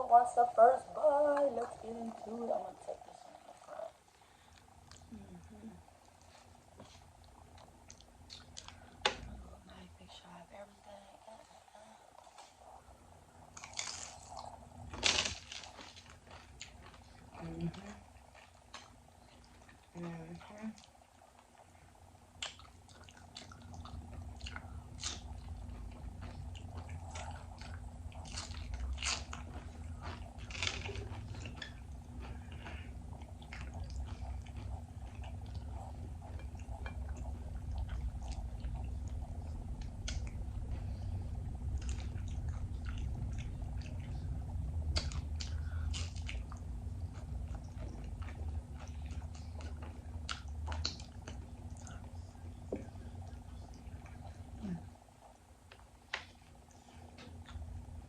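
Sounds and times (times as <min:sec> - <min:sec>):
faint steady hum: 0:00.0 - 0:58.0
wet chewing: 0:01.1 - 0:05.3, 0:06.0 - 0:09.4, 0:11.4 - 0:58.0
chips crunching: 0:13.6 - 0:17.1, 0:28.3 - 0:32.9.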